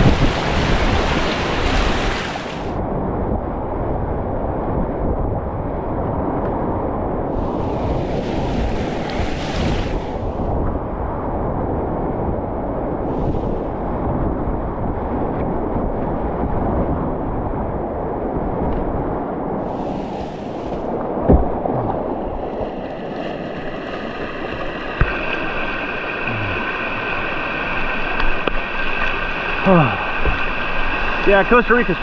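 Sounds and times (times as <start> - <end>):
river water rushing: 0.0 - 2.8, 7.4 - 10.2, 19.6 - 32.0
wind on microphone: 0.0 - 32.0.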